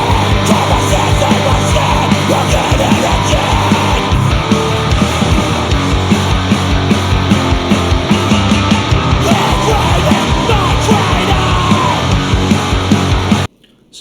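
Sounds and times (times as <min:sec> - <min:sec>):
person shouting vocals: 0:00.0 - 0:04.1, 0:09.2 - 0:12.2
distorted metal guitars: 0:00.0 - 0:13.5.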